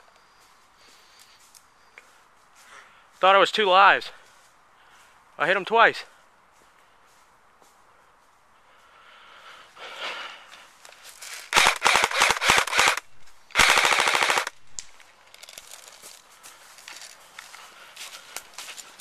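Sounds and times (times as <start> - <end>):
rustling movement: 9.8 - 19.0
airsoft rifle firing bursts: 11.5 - 14.6.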